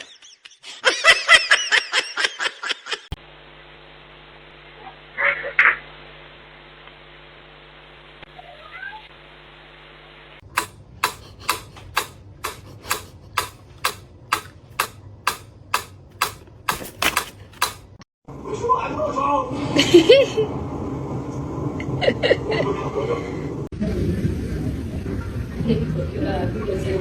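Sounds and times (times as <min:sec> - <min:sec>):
sharp taps: 0:10.5 - 0:18.0.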